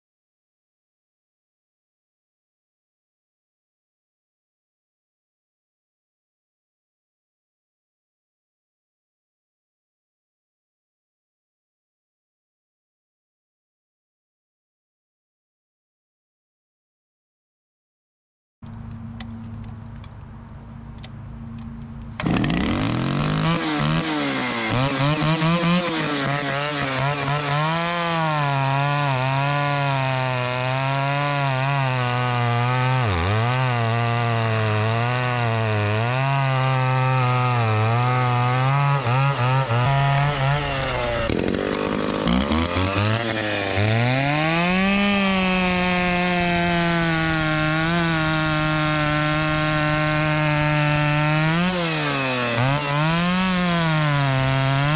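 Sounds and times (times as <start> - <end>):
chainsaw cutting wood: 22.2 - 54.9.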